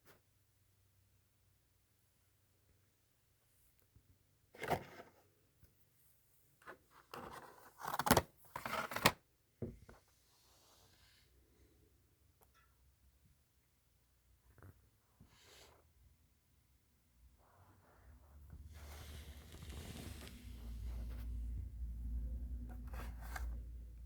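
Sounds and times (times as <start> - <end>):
rustling and scraping handling noise: 6.5 - 9.2, 17.4 - 24.0.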